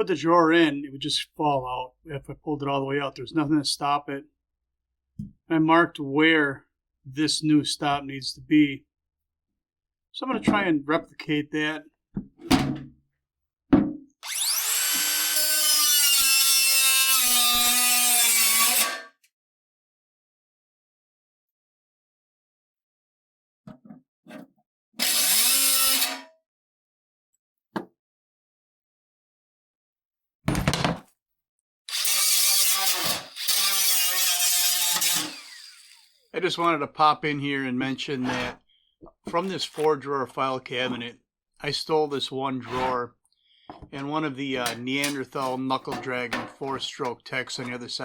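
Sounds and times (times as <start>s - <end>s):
electric power tool whining: 14.2s - 18.2s, 31.9s - 36.3s.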